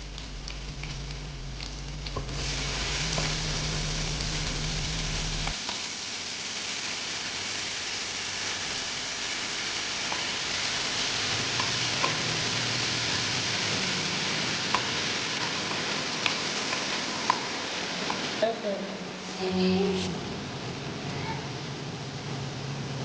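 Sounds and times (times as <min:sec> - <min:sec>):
low steady hum: 0:00.0 - 0:05.6
food sizzling in hot oil: 0:00.0 - 0:19.4.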